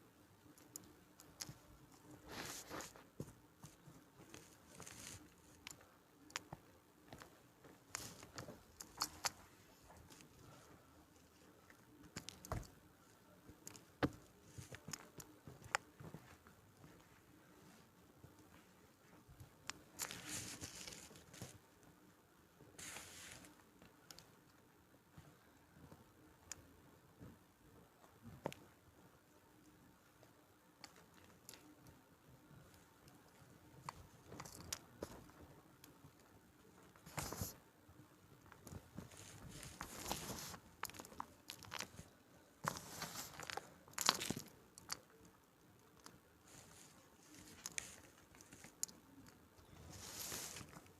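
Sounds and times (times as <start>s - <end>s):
chalk crunching and crumbling: 38.5s - 45.0s, 46.5s - 50.9s.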